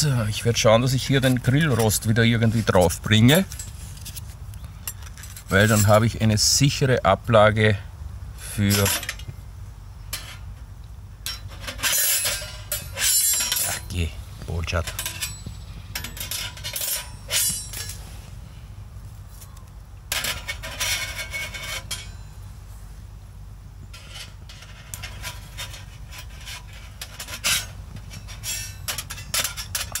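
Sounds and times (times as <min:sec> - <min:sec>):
metal grill grate clinking: 0:08.6 - 0:09.3, 0:10.1 - 0:18.2, 0:20.1 - 0:22.4, 0:23.9 - 0:30.0.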